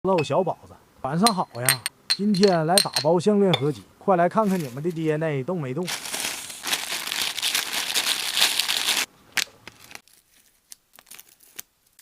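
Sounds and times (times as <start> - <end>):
packaging crinkling: 5.9 - 12.0.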